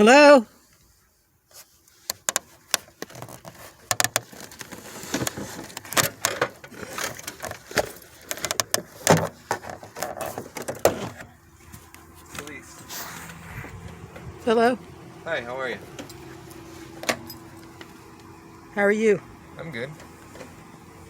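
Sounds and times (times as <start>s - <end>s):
rustling: 0.5s - 18.7s
sharp clicks and knocks: 2.1s - 12.5s.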